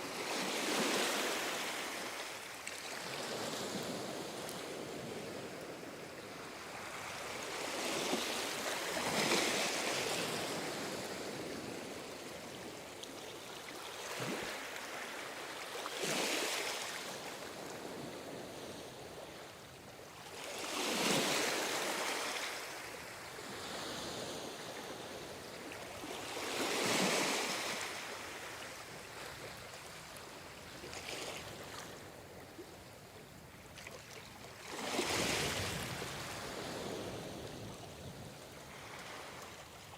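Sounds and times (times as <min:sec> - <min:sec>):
ocean waves breaking on shore: 0:00.0 - 0:12.4, 0:20.3 - 0:32.7, 0:33.7 - 0:39.9.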